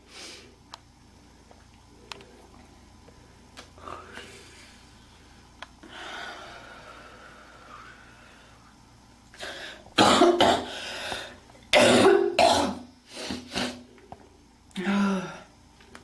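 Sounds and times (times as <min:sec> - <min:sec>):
faint breathing noise: 0:03.2 - 0:08.8, 0:10.7 - 0:11.5
girl coughing hard: 0:10.0 - 0:10.8, 0:11.8 - 0:13.8.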